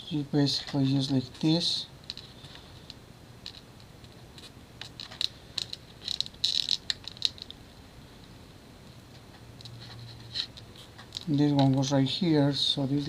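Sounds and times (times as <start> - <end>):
small plastic parts clicking: 4.8 - 7.6.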